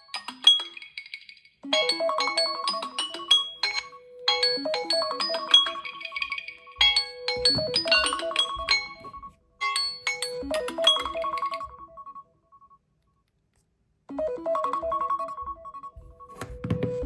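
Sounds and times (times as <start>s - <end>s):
chiming alarm ringtone melody: 1.7s - 12.8s, 14.1s - 16.4s.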